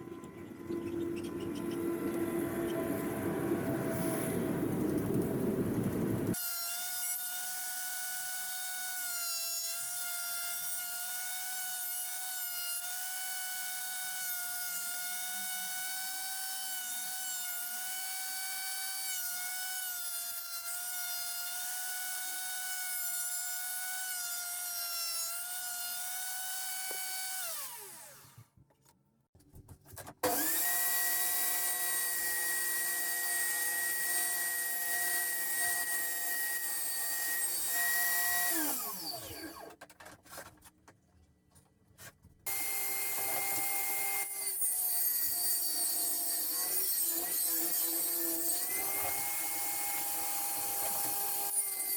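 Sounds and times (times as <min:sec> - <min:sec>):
power tool whining on wood: 0:06.3 - 0:28.5, 0:30.2 - 0:39.8, 0:42.5 - 0:51.9
power tool winding down: 0:26.4 - 0:28.4, 0:30.2 - 0:31.7, 0:37.4 - 0:39.7, 0:42.5 - 0:45.0.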